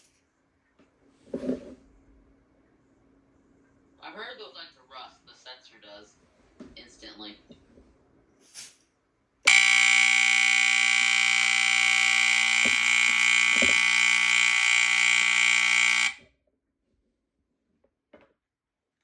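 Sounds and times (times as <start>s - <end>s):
smoke alarm buzzer: 9.5s - 16.2s.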